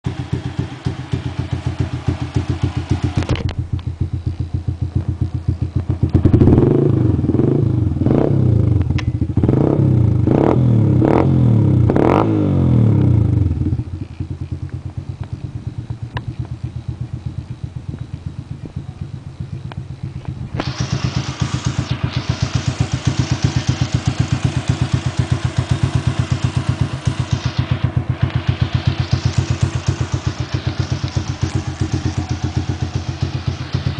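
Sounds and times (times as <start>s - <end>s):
motorcycle engine idling and revving: 0.0s - 33.9s
steady hiss: 0.1s - 6.2s, 13.6s - 33.9s.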